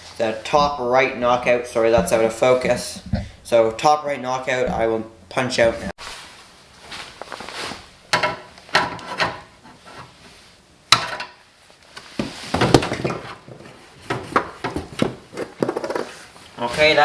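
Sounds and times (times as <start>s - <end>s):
tool knocking on steel cabinet: 0.5s - 3.8s, 4.6s - 5.9s.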